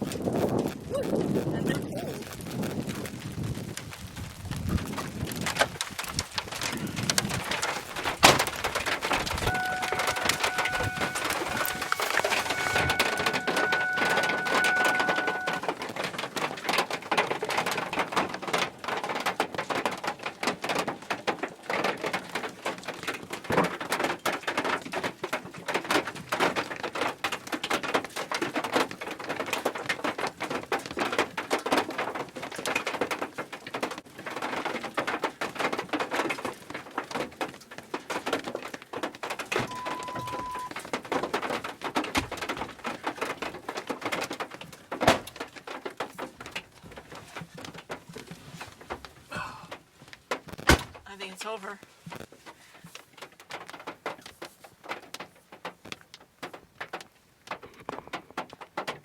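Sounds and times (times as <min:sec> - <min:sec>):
heavy rain pattering: 0:00.0 - 0:59.0
short beep: 0:09.5 - 0:15.6, 0:39.6 - 0:40.7
steady electronic tone: 0:09.5 - 0:15.6.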